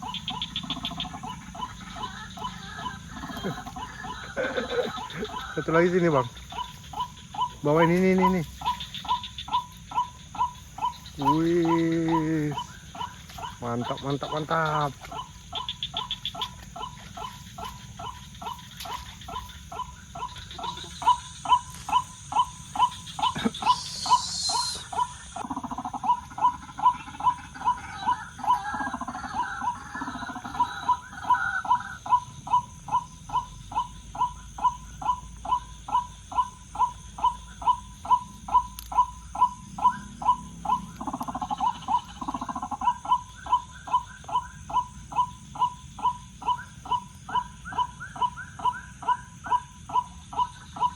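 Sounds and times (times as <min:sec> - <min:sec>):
waterhen wak-wak call: 0:00.0 - 0:50.9.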